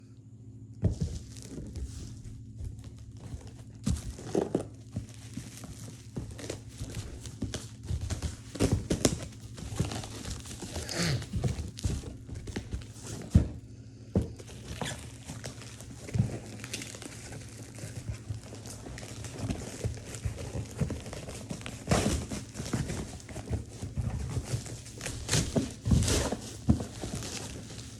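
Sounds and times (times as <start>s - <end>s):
paper crinkling and tearing: 14.5s - 27.9s.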